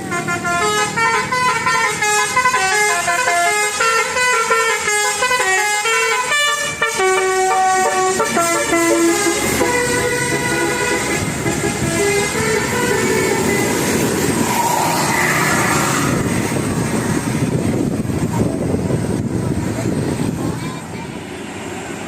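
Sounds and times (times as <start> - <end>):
multi-tone air horn tune: 0.0 - 16.5.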